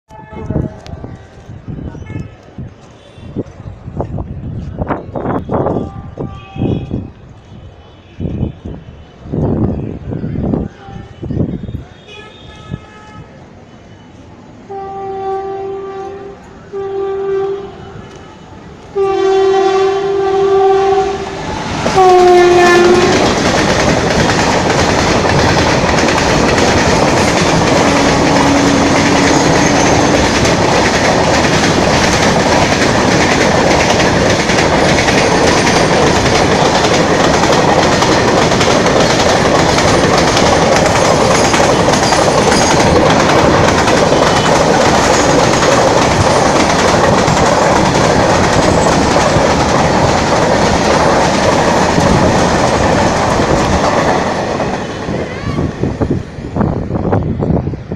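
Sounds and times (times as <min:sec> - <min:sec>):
locomotive air horn blasts: 0:05.4 - 0:09.1, 0:10.8 - 0:13.4, 0:14.7 - 0:23.3, 0:27.8 - 0:30.1
train clattering past: 0:12.6 - 0:57.9.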